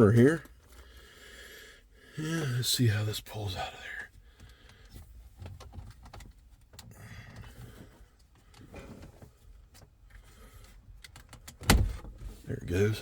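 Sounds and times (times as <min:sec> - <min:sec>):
faint plastic clicks and rattling: 0:04.0 - 0:11.7.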